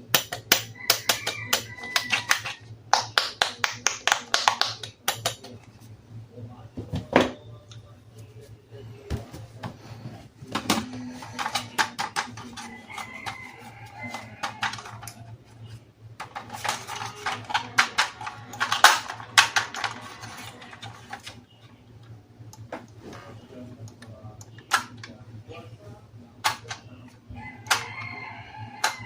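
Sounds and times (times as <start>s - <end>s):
plastic toys clicking and rattling: 0.2s - 2.6s, 10.6s - 15.3s, 16.2s - 21.4s.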